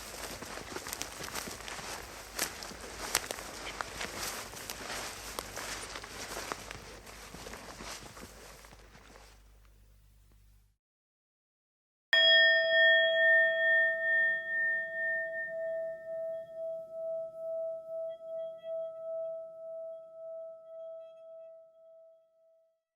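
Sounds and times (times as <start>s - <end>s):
metal bell chime ringing: 12.2s - 21.8s.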